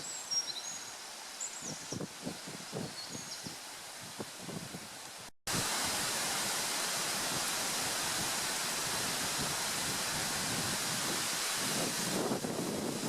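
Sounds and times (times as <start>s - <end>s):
stream flowing over stones: 0.0s - 13.0s.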